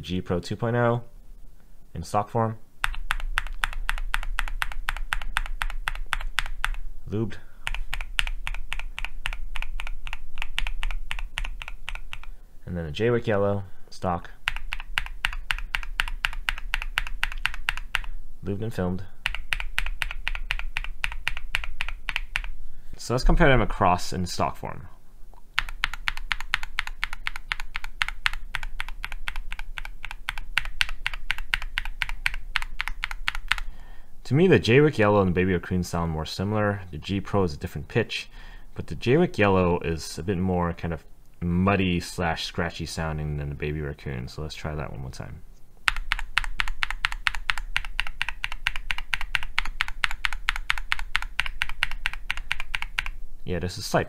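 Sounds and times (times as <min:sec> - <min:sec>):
mechanical keyboard typing: 0:02.8 - 0:06.8, 0:07.6 - 0:12.3, 0:14.4 - 0:18.2, 0:19.2 - 0:22.6, 0:25.6 - 0:33.7, 0:45.8 - 0:53.2.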